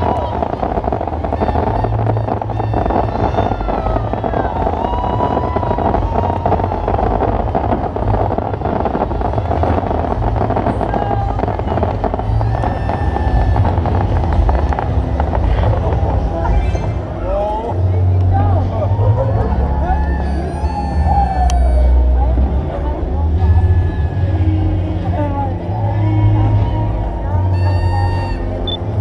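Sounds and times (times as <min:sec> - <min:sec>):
whistling fireworks: 0:00.0 - 0:17.2, 0:19.9 - 0:22.0, 0:27.5 - 0:29.0
fireworks crackling: 0:00.0 - 0:29.0.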